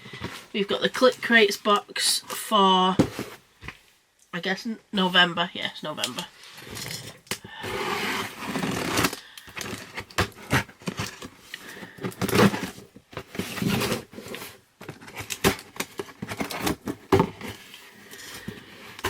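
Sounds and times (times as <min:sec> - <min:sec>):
cardboard rustling and crinkling: 0:00.0 - 0:03.9, 0:06.1 - 0:19.0
cardboard tearing: 0:07.8 - 0:11.3
small knocks of packaging: 0:14.8 - 0:17.6.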